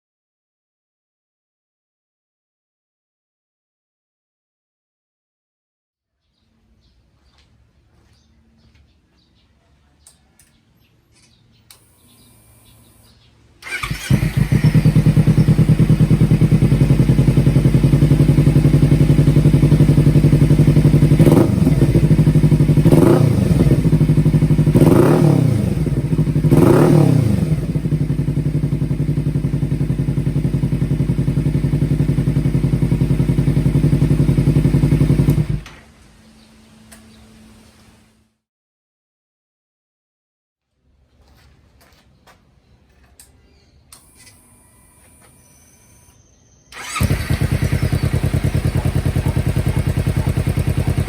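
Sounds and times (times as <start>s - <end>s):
motorcycle engine idling: 13.6s - 35.6s, 46.8s - 51.0s
engine revving: 13.6s - 35.7s, 46.7s - 51.0s.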